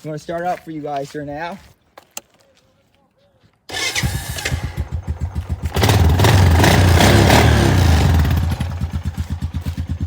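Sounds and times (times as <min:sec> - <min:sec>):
atv engine idling: 0:03.7 - 0:10.0.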